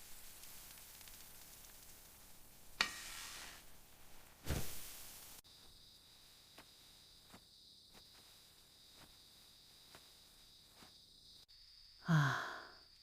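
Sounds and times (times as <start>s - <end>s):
crickets trilling: 5.4s - 13.0s.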